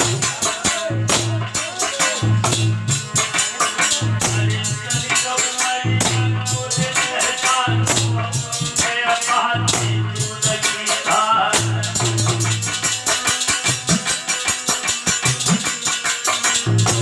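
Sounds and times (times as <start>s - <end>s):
jingling percussion: 0.0s - 17.0s
person singing: 3.5s - 12.4s.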